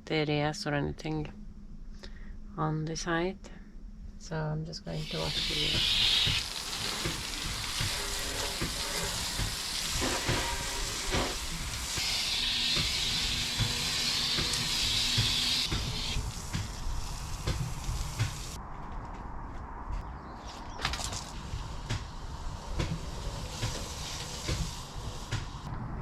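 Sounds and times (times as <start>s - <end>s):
water spraying hiss: 4.9s - 18.6s, 21.2s - 25.7s.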